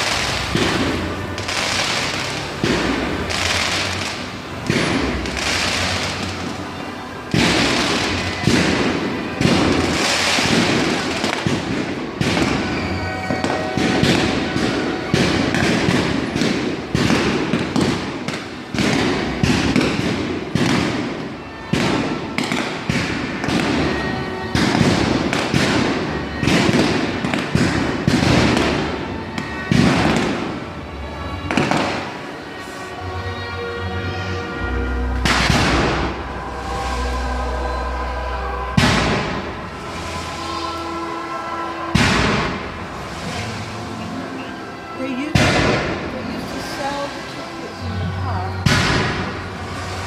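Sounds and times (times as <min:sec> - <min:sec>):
firework shells bursting: 0:00.0 - 0:30.7
firework crackle: 0:00.0 - 0:33.2, 0:34.1 - 0:50.0.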